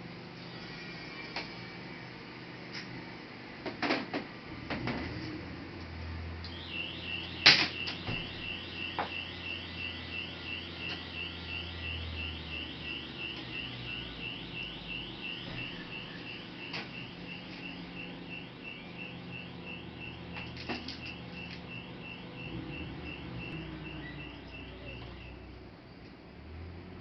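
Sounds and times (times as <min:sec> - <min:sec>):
high repeating chirp: 0:06.5 - 0:25.4.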